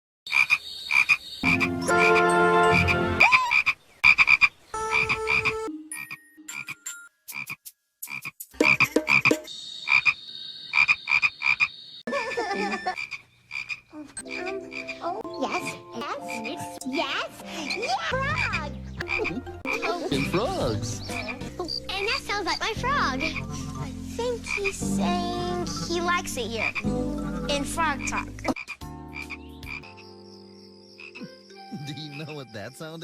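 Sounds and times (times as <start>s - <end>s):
frog croaking: 0.3s - 12.0s, 12.8s - 15.4s, 16.2s - 16.8s, 18.4s - 21.9s, 23.2s - 24.8s, 25.6s - 26.9s, 28.0s - 32.3s.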